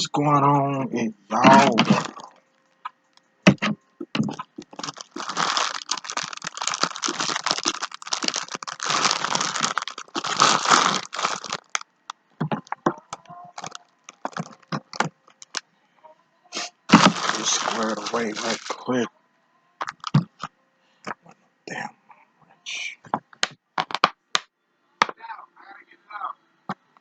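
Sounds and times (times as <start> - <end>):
plastic wrap crinkling and tearing: 1.5 - 2.4, 4.1 - 11.8, 13.6 - 15.6, 16.9 - 18.8, 19.8 - 20.4.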